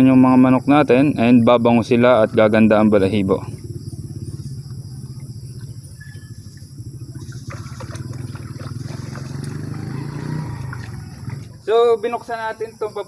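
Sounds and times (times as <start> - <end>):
small engine running: 3.2 - 11.6.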